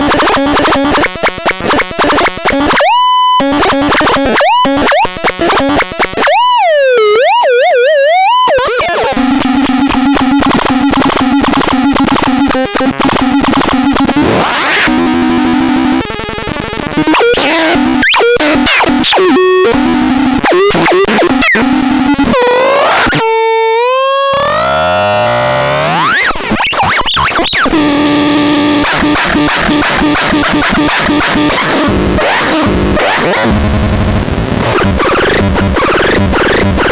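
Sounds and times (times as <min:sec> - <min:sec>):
buzzy synthesizer noise tones: 0:00.0 - 0:36.9
synthesizer held tone: 0:27.7 - 0:36.9.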